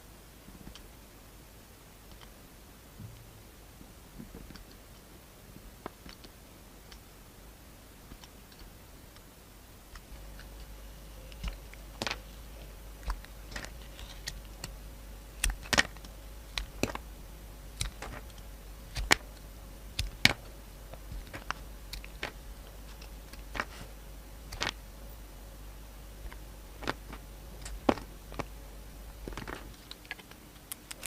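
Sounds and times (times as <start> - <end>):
low steady hum: 0.0 - 31.0
blade cutting soap clicks: 15.4 - 17.0, 17.8 - 19.4, 20.0 - 22.4.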